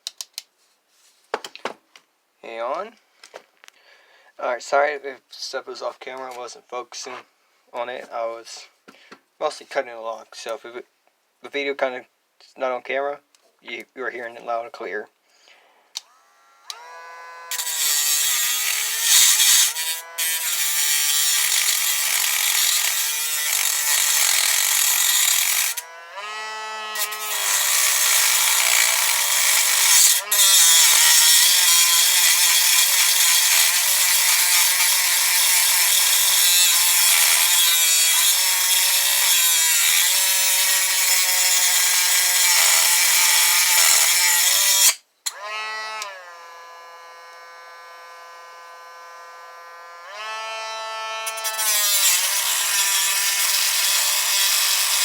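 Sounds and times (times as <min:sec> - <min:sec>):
cut-off wheel grinding metal: 0:16.0 - 0:55.0.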